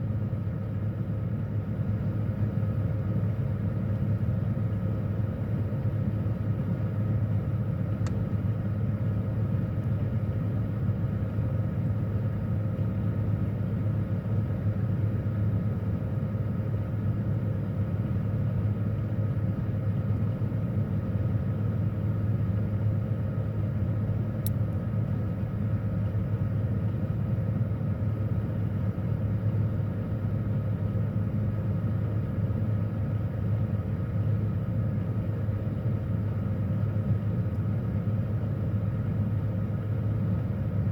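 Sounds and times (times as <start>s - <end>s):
faint click: 8.0s - 8.2s.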